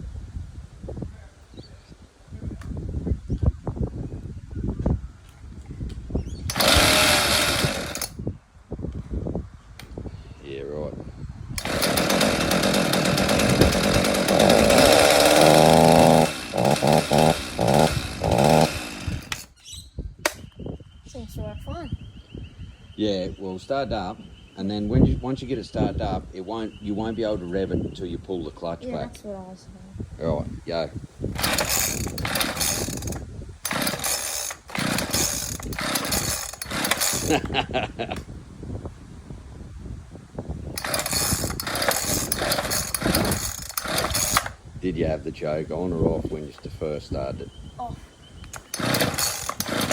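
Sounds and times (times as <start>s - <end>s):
chainsaw engine revving: 6.5s - 8.2s, 11.6s - 19.5s, 31.3s - 37.6s, 40.8s - 44.6s, 48.6s - 49.9s.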